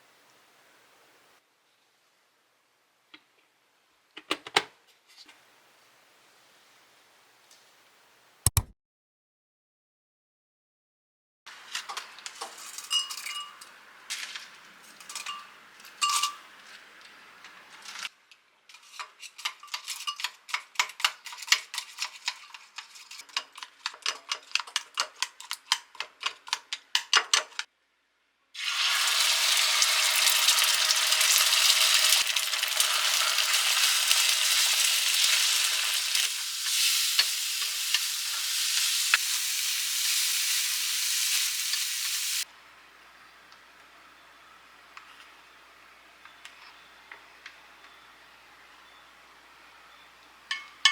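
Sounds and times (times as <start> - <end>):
food sizzling in a frying pan: 28.6 - 42.5.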